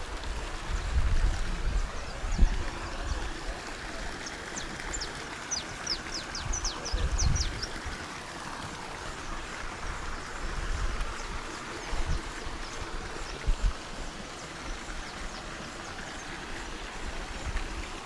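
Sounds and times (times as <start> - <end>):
water rushing: 0.0 - 18.0.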